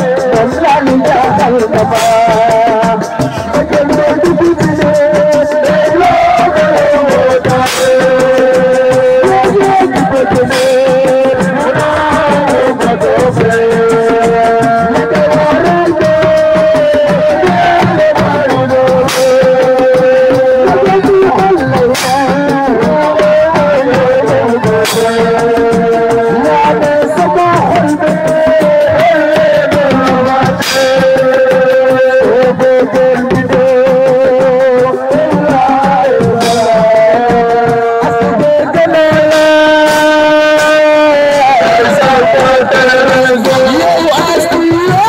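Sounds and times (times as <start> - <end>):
fast hand drumming: 0.0 - 45.0
person singing wavering melody: 35.2 - 45.0.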